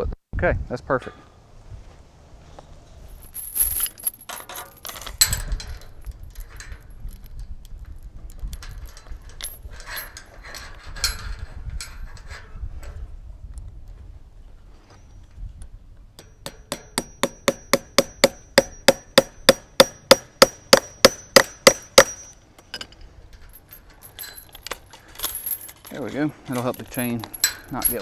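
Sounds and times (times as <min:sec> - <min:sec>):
metal chain clinking: 0:03.0 - 0:12.6, 0:16.2 - 0:28.0.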